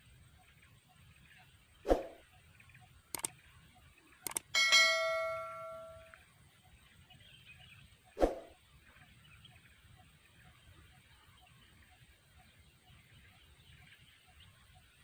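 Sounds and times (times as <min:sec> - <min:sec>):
struck metal object ringing: 0:04.6 - 0:06.1.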